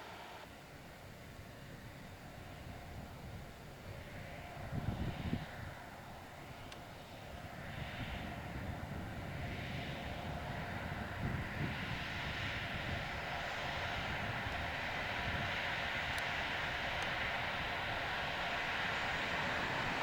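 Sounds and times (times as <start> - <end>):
train rumbling along tracks: 10.0 - 20.0.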